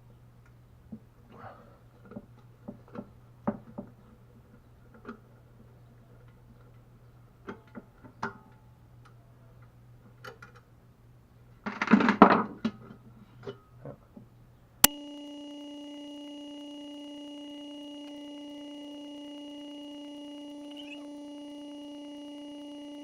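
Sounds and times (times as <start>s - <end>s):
steady pitched hum: 14.8s - 23.0s.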